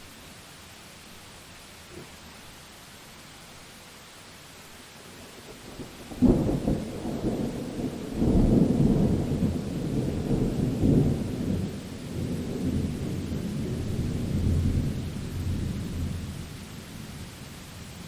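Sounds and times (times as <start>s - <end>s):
steady hiss: 0.0s - 18.0s
thunder crack and rumble: 5.7s - 16.5s.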